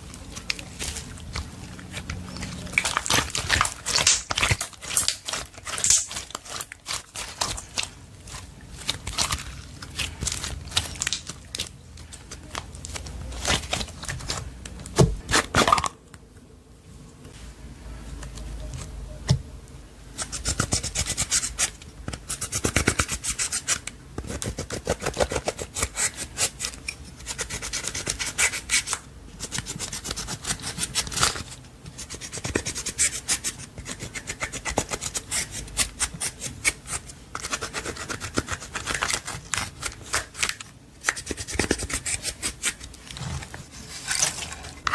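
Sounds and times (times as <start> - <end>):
sticky slime clicks and crackles: 2.1 - 8.0, 8.8 - 15.0.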